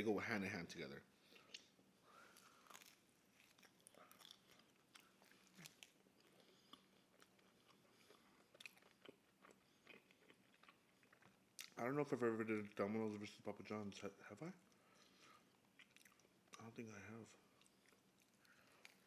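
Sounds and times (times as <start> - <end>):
chewing and biting pizza: 2.4 - 11.8, 15.5 - 16.6.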